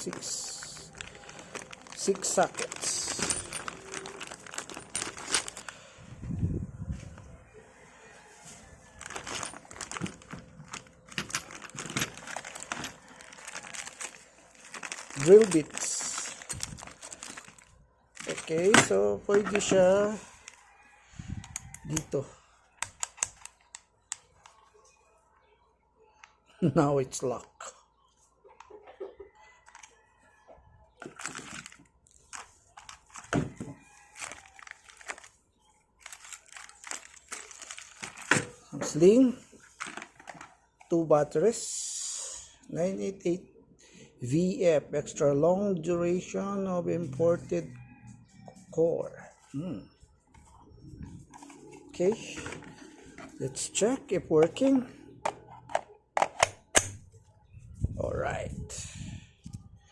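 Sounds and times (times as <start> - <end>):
plastic packaging crinkling: 0.0 - 5.8, 9.0 - 19.7, 31.0 - 38.6
small metal accessories clicking: 0.0 - 5.8, 9.0 - 19.8, 36.0 - 38.4.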